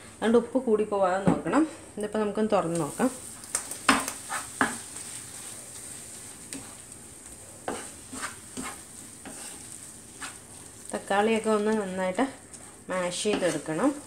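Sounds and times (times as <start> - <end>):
faint sizzle of cooking: 0.0 - 14.0
spatula scraping a frying pan: 3.8 - 14.0.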